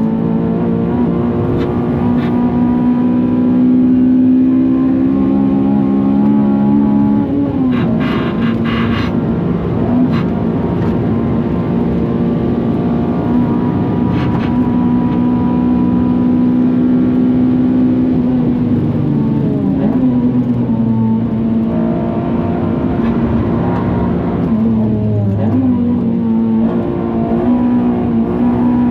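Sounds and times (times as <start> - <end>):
engine revving high: 0.0 - 9.1.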